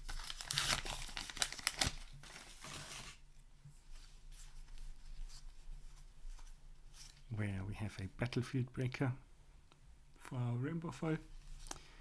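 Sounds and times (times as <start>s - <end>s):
paper wrapper tearing and crinkling: 0.0s - 3.2s.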